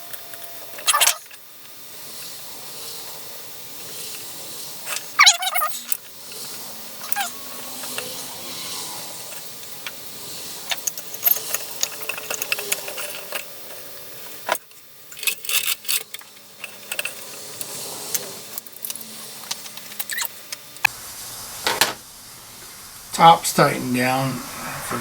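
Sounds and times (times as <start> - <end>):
steady hiss: 0.0 - 25.0
small plastic parts clicking: 3.8 - 20.6.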